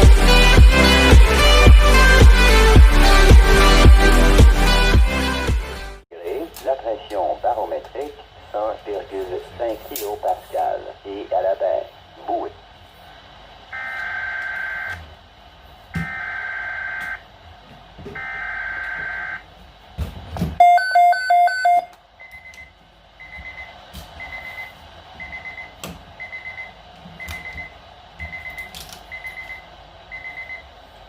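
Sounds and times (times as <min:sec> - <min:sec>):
receiver alarm beeping: 0:13.8 - 0:15.0, 0:16.0 - 0:17.2, 0:18.2 - 0:19.4, 0:20.6 - 0:30.7
loud beeps: 0:20.6 - 0:22.6.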